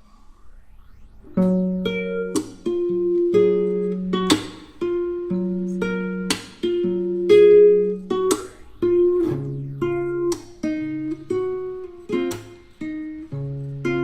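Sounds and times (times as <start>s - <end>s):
plucked and strummed guitar music: 1.4s - 14.0s.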